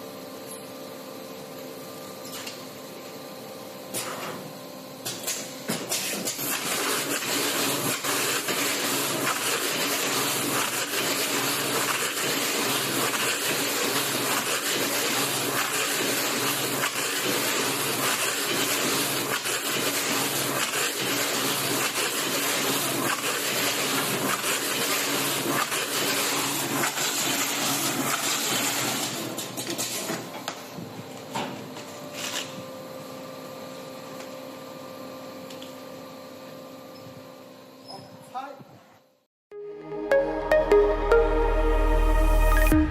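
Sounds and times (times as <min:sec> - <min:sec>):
loud hissing machine noise: 0:06.2 - 0:29.2.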